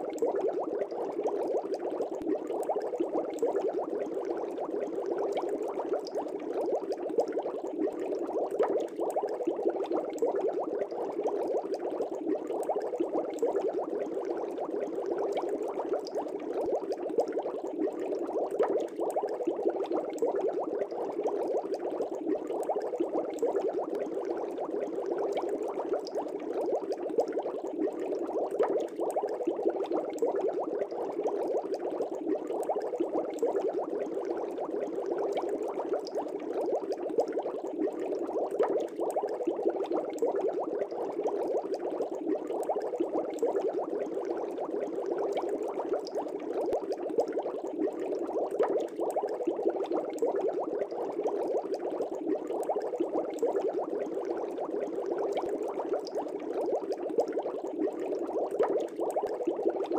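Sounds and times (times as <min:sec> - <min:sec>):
aquarium air bubbling: 0:00.0 - 0:59.9
tiny bubble pops: 0:45.3 - 0:51.8.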